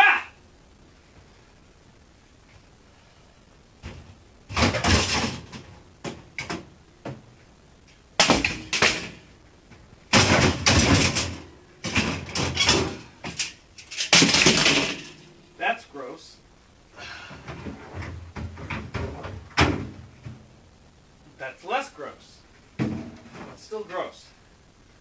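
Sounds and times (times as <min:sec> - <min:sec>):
knocking and clattering of parts: 0:03.8 - 0:07.3, 0:08.2 - 0:15.4, 0:17.3 - 0:20.5, 0:22.8 - 0:23.6.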